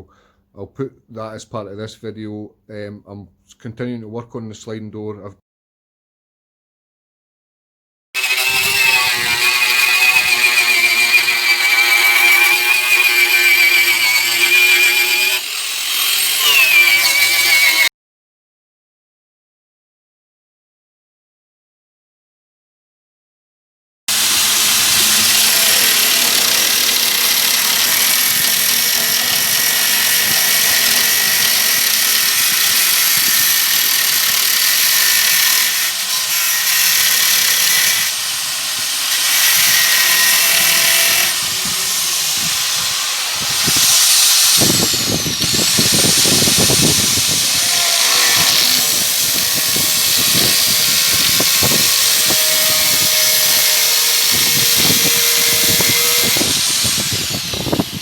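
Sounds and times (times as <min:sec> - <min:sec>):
angle grinder wire wheel on steel: 0:08.2 - 0:17.9, 0:24.1 - 0:58.0.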